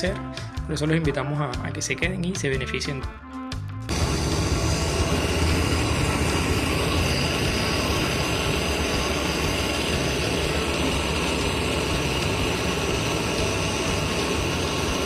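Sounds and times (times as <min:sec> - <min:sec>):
machine running hum and hiss: 0:03.9 - 0:15.0.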